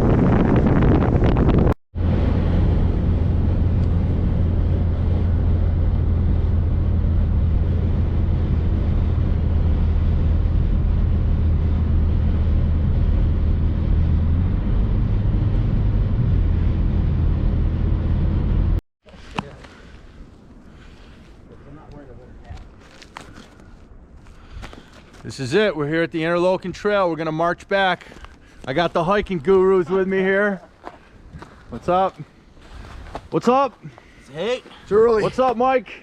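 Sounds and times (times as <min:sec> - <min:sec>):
vehicle engine and road noise: 0:02.0 - 0:18.8.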